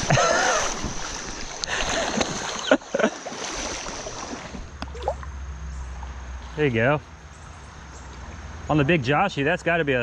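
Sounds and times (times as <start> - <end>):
person wading in water: 0.0 - 5.2
sharp splashes: 0.0 - 5.2
creek water rushing: 0.0 - 5.4.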